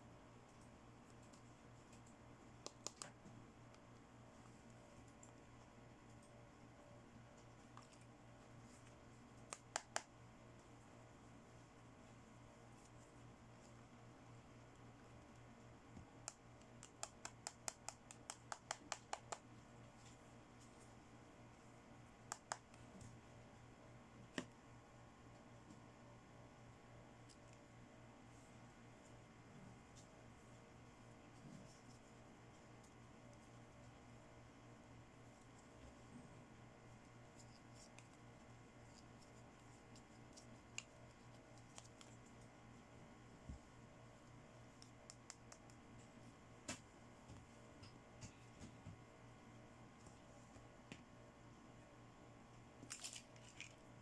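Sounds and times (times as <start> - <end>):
low steady hum: 0.0 - 54.0.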